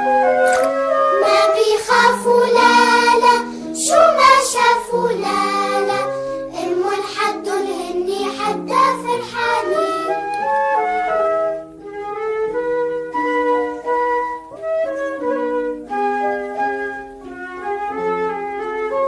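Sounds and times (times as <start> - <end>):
instrumental backing of held notes: 0.0 - 19.0
children singing: 1.2 - 10.4.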